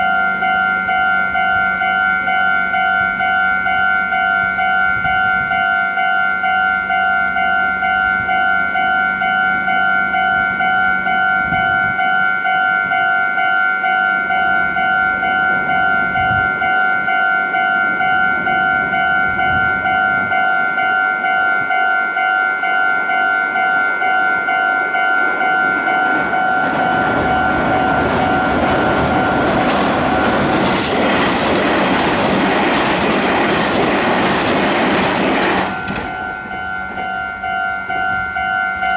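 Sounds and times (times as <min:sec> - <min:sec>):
level crossing warning bell: 0:00.0 - 0:38.9
train wheels clattering: 0:25.4 - 0:38.9.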